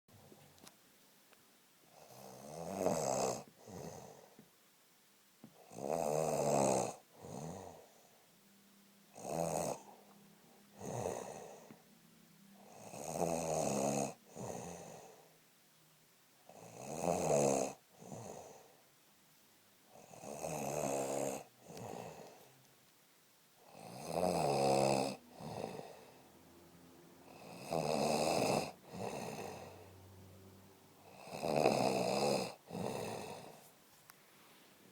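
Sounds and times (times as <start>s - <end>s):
person snoring: 2.0s - 4.4s, 5.6s - 8.1s, 9.1s - 11.8s, 12.6s - 15.3s, 16.5s - 18.7s, 19.9s - 22.4s, 23.6s - 26.2s, 27.2s - 30.2s, 31.0s - 33.6s.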